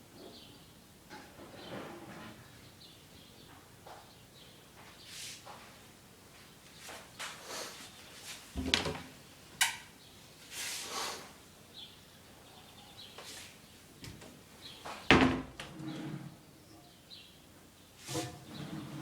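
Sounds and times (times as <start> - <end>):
cabinet doors thudding shut: 15.1 - 15.7
drawer sliding: 15.6 - 16.4, 18.0 - 19.0.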